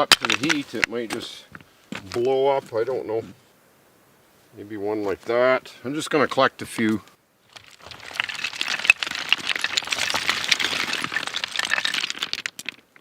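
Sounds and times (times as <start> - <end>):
loose rocks clattering: 0.0 - 2.4, 6.7 - 13.0.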